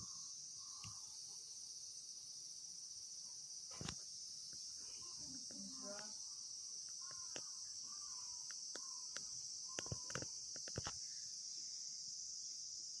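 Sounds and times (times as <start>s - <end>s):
high-pitched insect drone: 0.0s - 13.0s
faint clicks: 0.8s - 1.0s, 6.8s - 11.0s.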